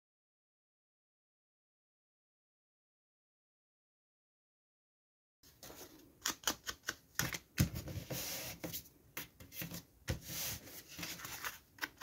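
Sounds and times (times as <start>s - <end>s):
paper rustling: 7.2s - 12.0s.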